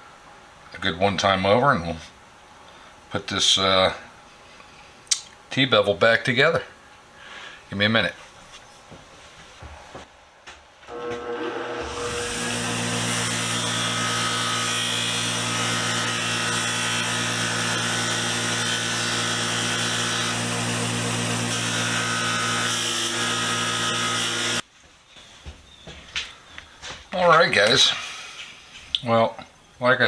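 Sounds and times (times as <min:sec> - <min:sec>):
motor hum: 0:10.9 - 0:24.6.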